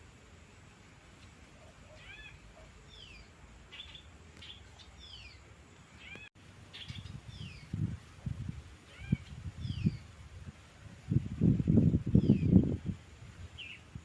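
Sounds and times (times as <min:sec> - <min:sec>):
birds chirping: 0:01.1 - 0:07.9, 0:08.9 - 0:10.2, 0:12.1 - 0:12.8.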